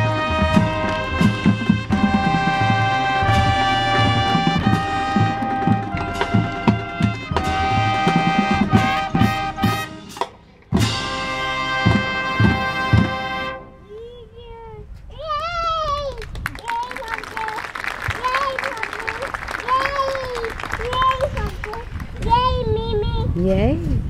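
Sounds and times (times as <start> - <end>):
marching band playing: 0.0 - 13.8, 16.6 - 21.5.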